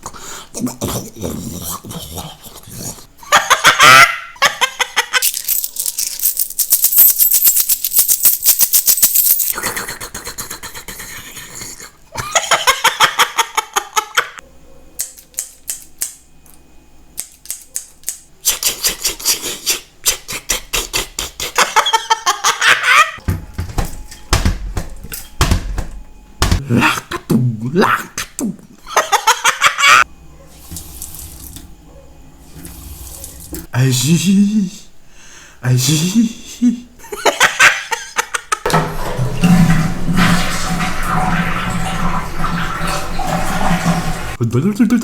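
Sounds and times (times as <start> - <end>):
man making mouth clicks: 9.5 - 12.0, 18.4 - 21.6.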